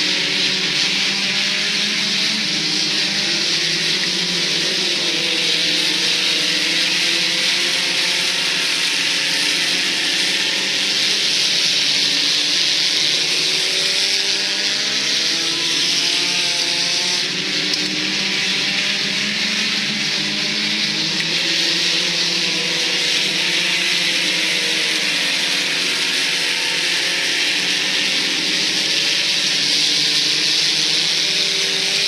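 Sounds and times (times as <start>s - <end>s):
race car engines: 0.0s - 32.0s.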